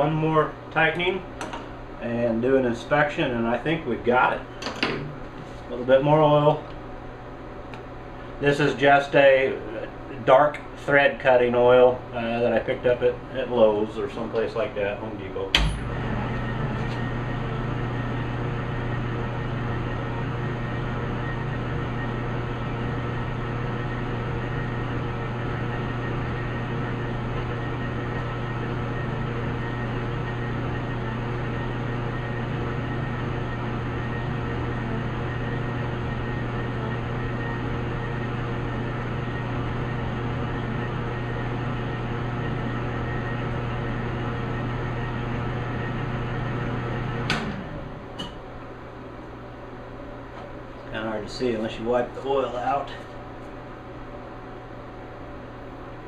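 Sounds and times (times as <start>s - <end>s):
switch click: 15.6s - 15.9s
metal lathe running: 15.6s - 48.0s.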